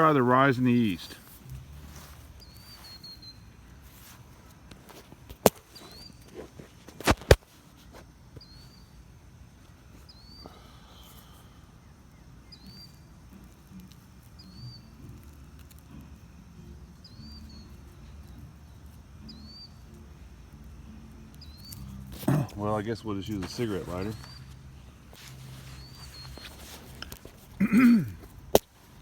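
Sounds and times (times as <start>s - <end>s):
songbird chirping: 0.0s - 6.7s, 8.0s - 29.0s
sharp cracks: 27.0s - 28.9s.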